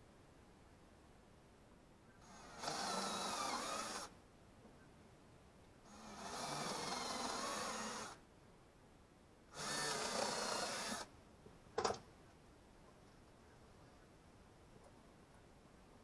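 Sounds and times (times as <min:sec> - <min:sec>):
power tool running: 0:02.4 - 0:04.1, 0:09.6 - 0:11.1.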